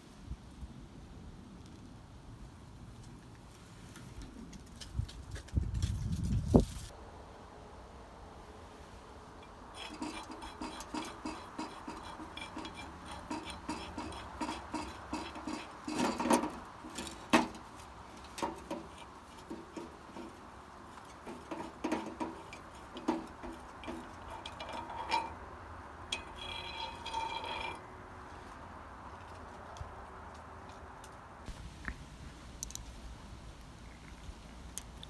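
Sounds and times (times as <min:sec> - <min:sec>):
metal tools clinking on bicycle parts: 0:09.4 - 0:25.4, 0:26.1 - 0:27.8.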